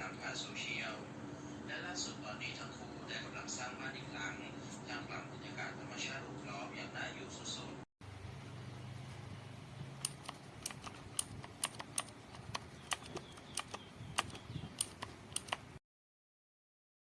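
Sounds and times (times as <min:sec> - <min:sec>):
mechanical keyboard typing: 0:10.0 - 0:15.8.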